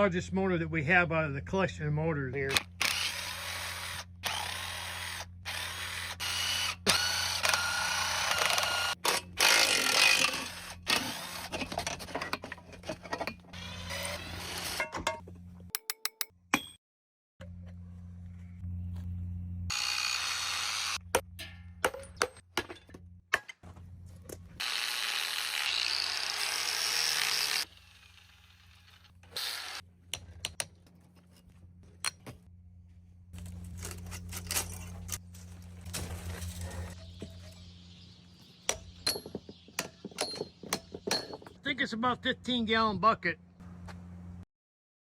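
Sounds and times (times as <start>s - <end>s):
power tool running: 2.6s - 11.5s, 19.7s - 21.1s, 24.6s - 29.8s
metal clanks and knocks: 38.7s - 41.6s.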